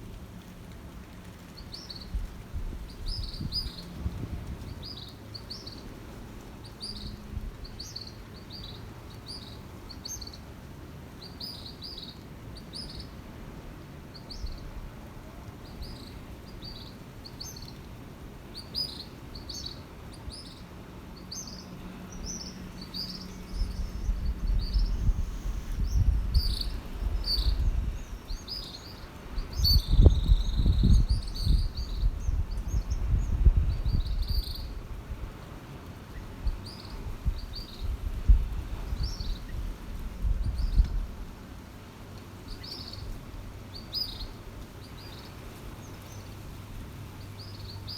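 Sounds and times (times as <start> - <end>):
small birds chirping: 2.9 - 10.5, 15.6 - 34.8, 36.1 - 41.0, 42.4 - 46.5
low rumble on microphone: 23.0 - 28.6, 29.4 - 35.3, 36.4 - 41.4.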